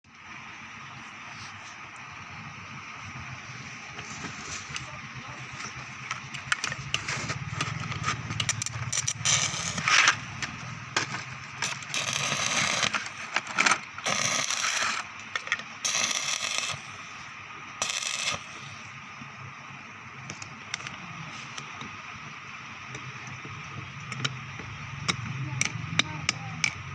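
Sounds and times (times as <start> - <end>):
low steady hum: 0.1 - 26.9
welding arc crackling: 2.8 - 26.9.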